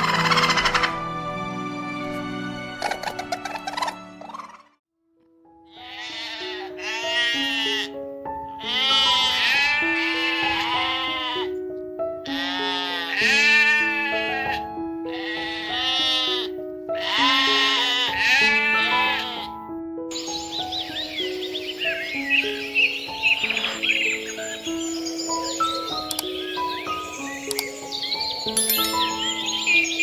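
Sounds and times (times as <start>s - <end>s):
background music with plain melody: 0.0s - 30.0s
farm animal bleating: 5.7s - 11.6s, 12.2s - 19.6s.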